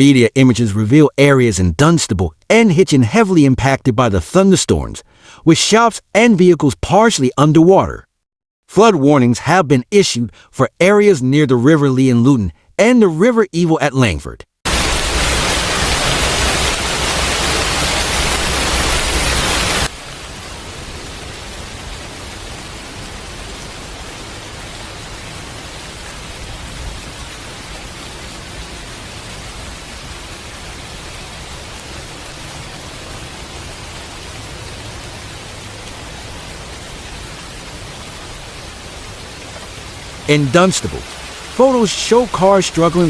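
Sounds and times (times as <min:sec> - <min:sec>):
hiss of rain or rushing water: 0:14.7 - 0:43.0.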